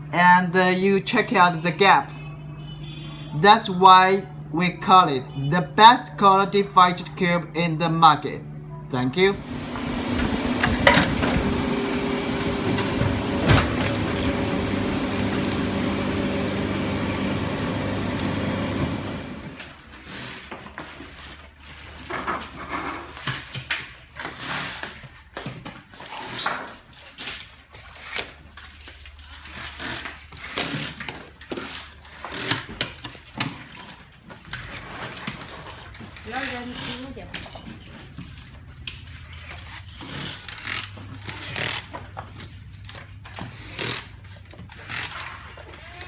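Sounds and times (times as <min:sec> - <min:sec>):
machine hum with held tones: 0:08.6 - 0:19.6.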